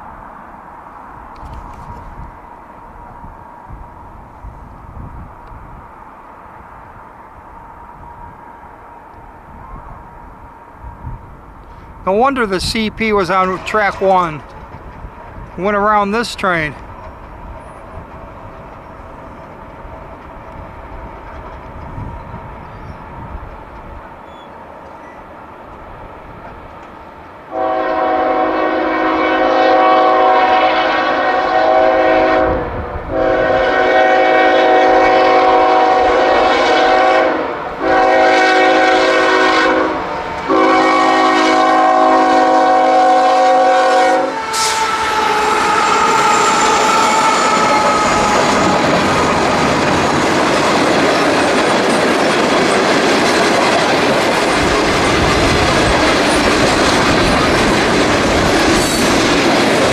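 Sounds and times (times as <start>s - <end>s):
train wheels clattering on rails: 12.8s - 27.5s, 44.8s - 59.9s
locomotive air horn blasts: 27.5s - 49.1s.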